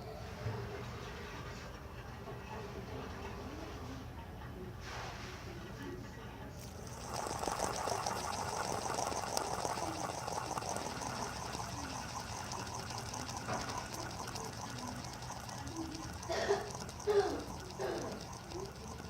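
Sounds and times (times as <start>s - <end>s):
fidget spinner whirring: 6.6s - 19.0s.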